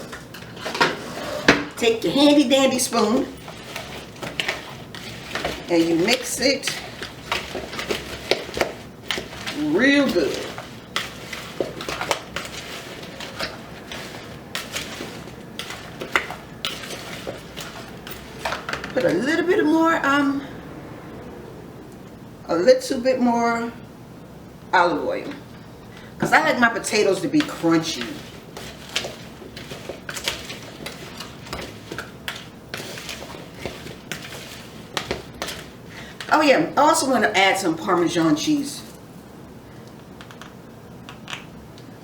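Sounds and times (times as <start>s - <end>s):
spoon stirring vegetables in bowl: 1.8s - 19.6s, 25.4s - 39.0s.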